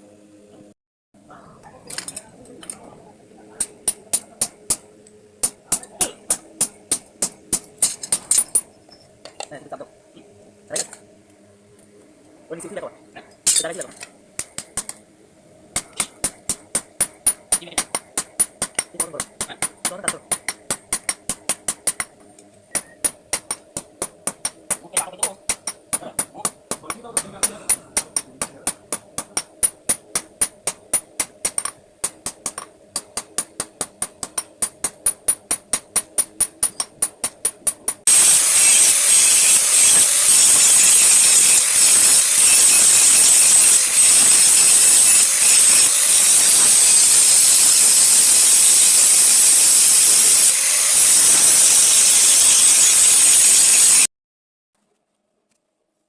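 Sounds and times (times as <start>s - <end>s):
hammer striking metal: 3.6s - 8.7s, 15.8s - 39.6s
loud steady hiss: 37.4s - 54.1s.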